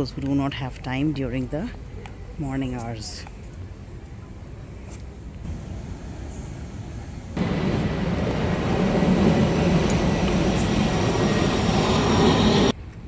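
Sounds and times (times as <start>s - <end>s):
airplane passing low overhead: 4.8s - 12.9s.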